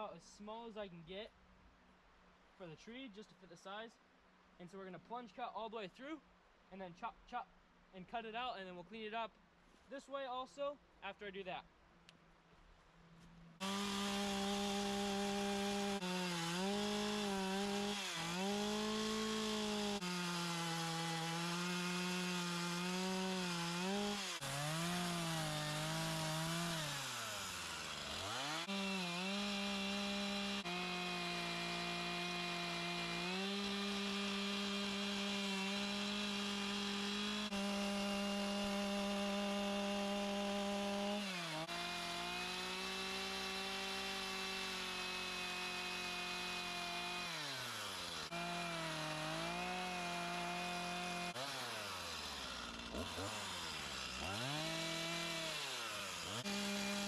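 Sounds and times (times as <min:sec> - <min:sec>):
chainsaw cutting wood: 0:13.6 - 0:57.0.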